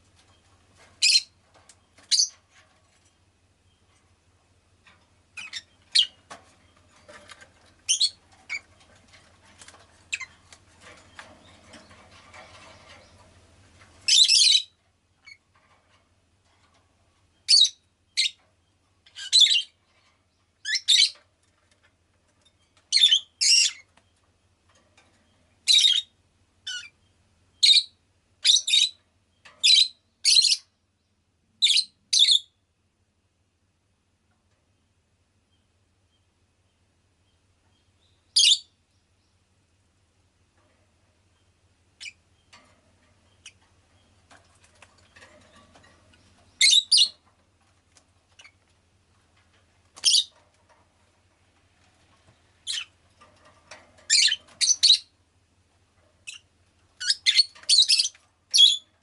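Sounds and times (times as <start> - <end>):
faint low hum: 0.0 - 59.0
bird chirping and calling: 1.0 - 1.4, 2.0 - 2.4, 5.4 - 6.2, 7.0 - 8.7, 14.1 - 15.4, 17.5 - 18.4, 19.1 - 19.8, 25.7 - 26.1, 38.0 - 38.7, 46.2 - 47.2, 50.0 - 50.3, 52.6 - 52.9, 54.0 - 55.1, 56.2 - 58.9.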